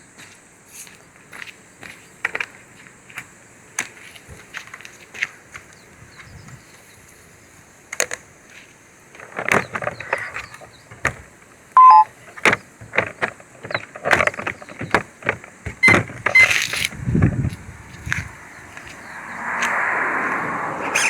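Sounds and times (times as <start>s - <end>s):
brief high beeps: 11.8s - 12.1s
electronic beep dropping in tone: 11.8s - 12.1s.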